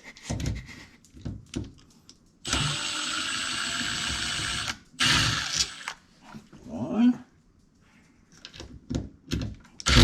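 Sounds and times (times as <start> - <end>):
cordless drill driving a screw: 2.5 - 6.0.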